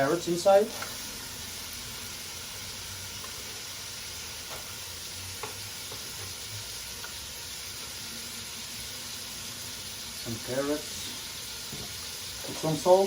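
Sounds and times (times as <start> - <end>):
onion sizzling in oil: 0.0 - 13.0.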